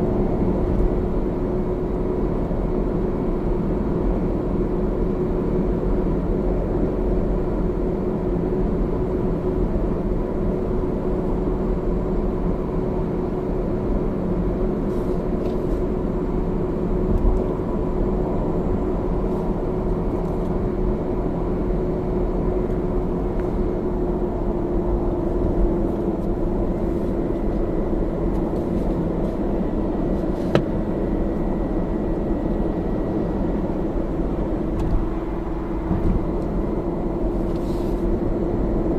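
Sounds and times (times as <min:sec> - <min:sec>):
car road noise: 0:00.0 - 0:38.9.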